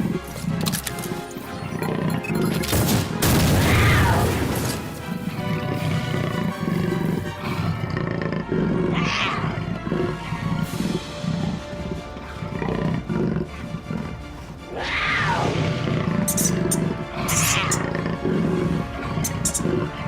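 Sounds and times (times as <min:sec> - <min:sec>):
classical music: 0:04.2 - 0:14.7, 0:15.5 - 0:20.0.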